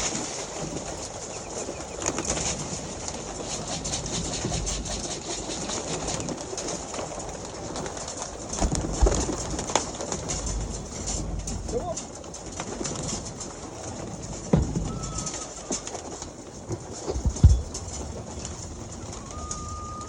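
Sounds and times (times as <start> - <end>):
small knocks: 8.4 - 19.3
pigeons cooing: 14.5 - 16.1, 16.7 - 20.0
loud thump: 17.1 - 17.8.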